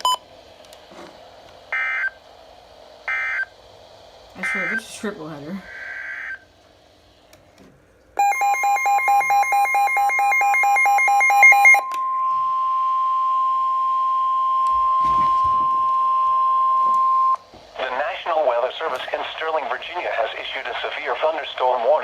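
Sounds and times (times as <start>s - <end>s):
steady alarm tone: 1.7s - 2.2s, 3.0s - 3.6s, 4.4s - 6.4s, 8.2s - 17.4s
rapid two-tone beeping: 5.6s - 6.4s, 8.2s - 17.4s.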